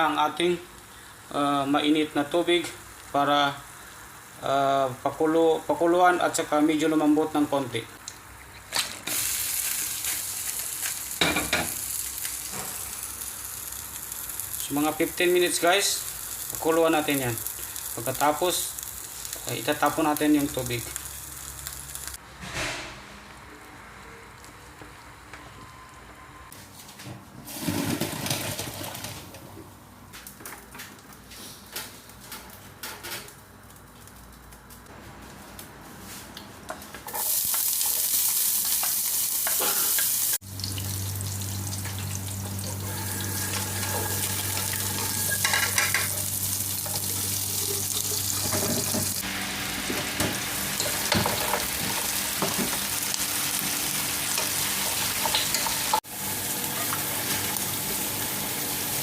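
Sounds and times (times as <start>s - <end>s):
pot hissing on heat: 9.0s - 22.6s, 37.1s - 59.0s.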